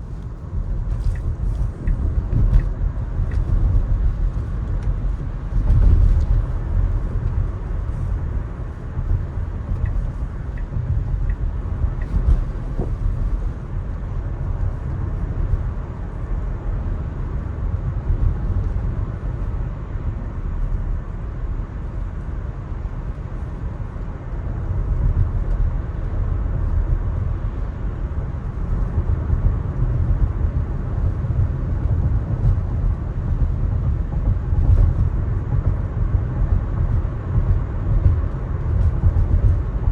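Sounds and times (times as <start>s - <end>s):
tyres rumbling on wet road: 0.0s - 19.7s.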